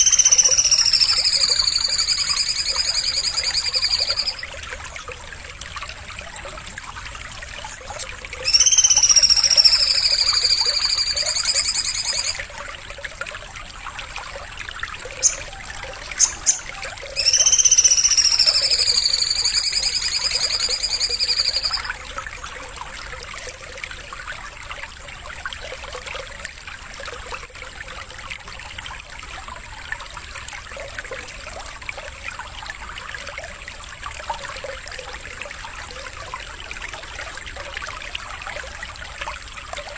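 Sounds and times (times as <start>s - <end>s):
songbird singing: 0.0s - 4.5s, 8.4s - 12.4s, 15.0s - 21.9s
trickle of running water: 0.0s - 39.9s.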